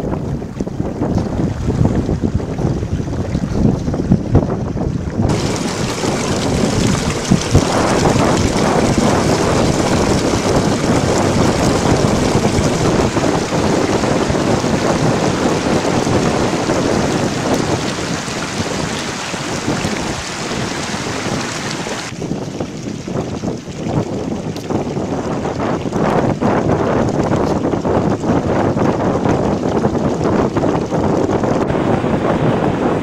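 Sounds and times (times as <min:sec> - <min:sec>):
fast-flowing river rushing: 0:05.2 - 0:22.2.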